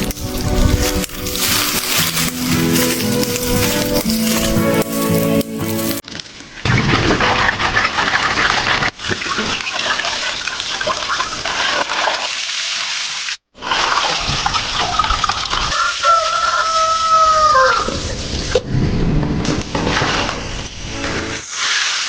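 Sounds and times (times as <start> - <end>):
crackling handling noise: 0.0 - 6.5
rooster crowing: 15.7 - 18.0.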